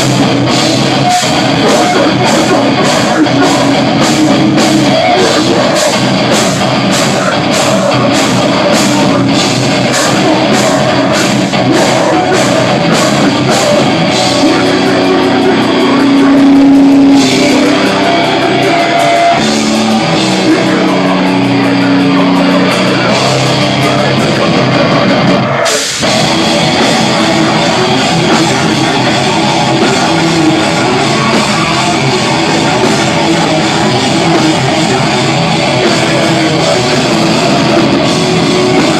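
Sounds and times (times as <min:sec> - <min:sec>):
drums hitting a steady beat: 0:00.0 - 0:38.9
heavy rock music: 0:00.0 - 0:38.9.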